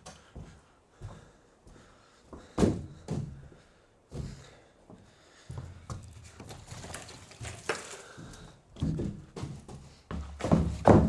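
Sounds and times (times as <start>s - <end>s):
wooden boards thudding: 10.5s - 11.0s.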